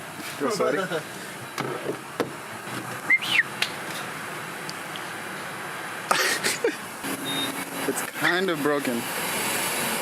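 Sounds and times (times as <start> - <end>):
steady background noise: 0.0 - 10.0
high whistle-like chirp: 3.1 - 3.5.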